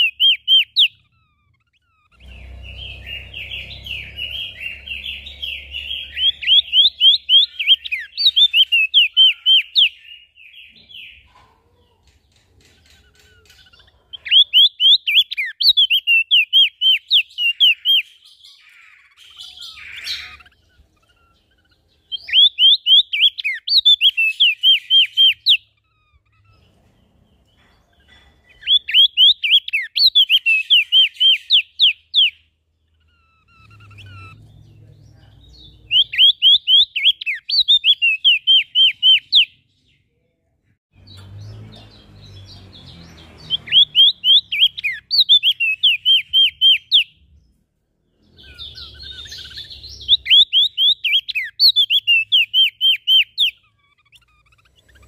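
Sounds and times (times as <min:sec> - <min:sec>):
songbird whistling notes: 0:00.0 - 0:11.3, 0:13.1 - 0:26.8, 0:28.5 - 0:32.4, 0:35.6 - 0:39.5, 0:43.4 - 0:47.2, 0:48.3 - 0:55.0
scratchy bird calls: 0:00.0 - 0:34.9, 0:48.2 - 0:55.0.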